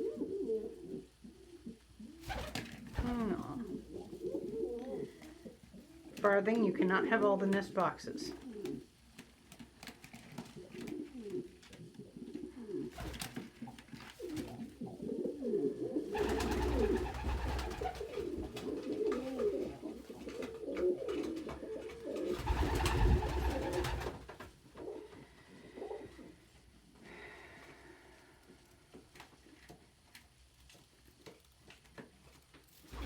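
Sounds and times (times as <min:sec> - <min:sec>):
pigeons cooing: 0:00.0 - 0:06.2, 0:08.4 - 0:09.0, 0:10.3 - 0:24.2, 0:24.8 - 0:26.6
rustling noise: 0:28.6 - 0:33.0.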